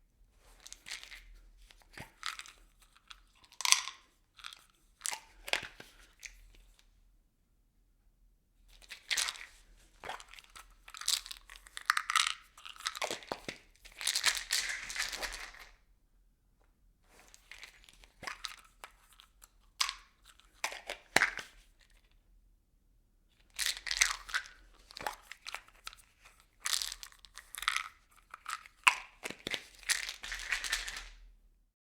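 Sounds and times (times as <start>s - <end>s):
objects rattling in plastic bottle: 10.0s - 15.7s, 23.6s - 31.2s.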